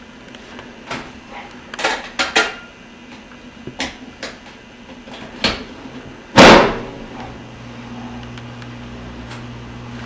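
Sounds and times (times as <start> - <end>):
dishes clinking in a dishwasher: 1.3 - 2.8.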